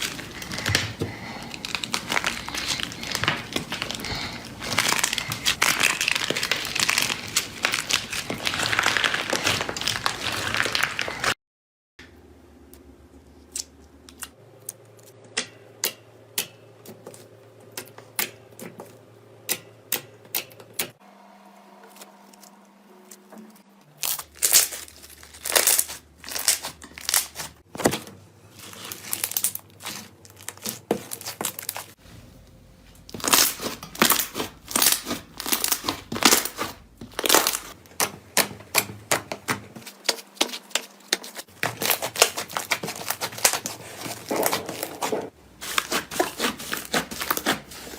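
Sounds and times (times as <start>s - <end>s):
slime crackling and popping: 0.0s - 11.4s, 24.0s - 27.6s, 33.1s - 38.8s, 41.3s - 45.1s.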